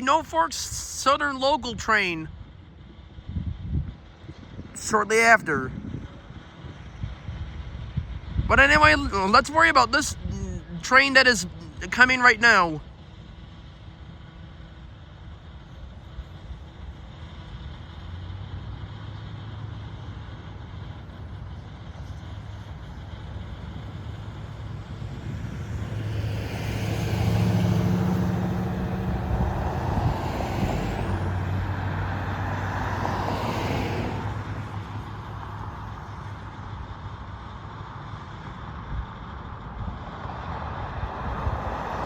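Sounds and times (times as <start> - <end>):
vehicle passing: 21.8 - 36.3.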